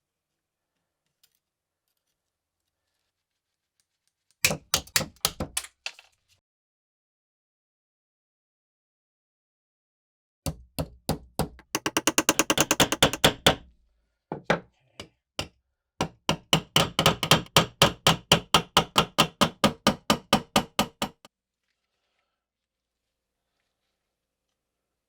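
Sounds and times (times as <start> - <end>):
hammer tapping: 10.5 - 13.6, 15.4 - 21.3.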